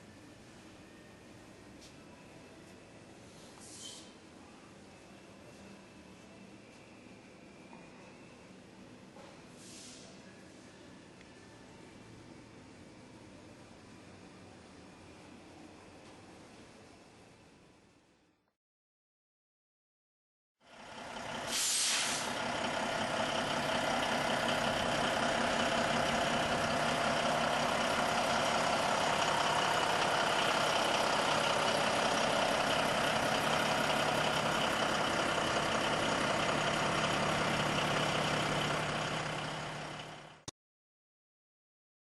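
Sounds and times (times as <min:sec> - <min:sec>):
air brake hiss: 0:03.3 - 0:04.2, 0:09.5 - 0:10.3, 0:21.4 - 0:22.4
truck diesel engine running: 0:20.7 - 0:40.5.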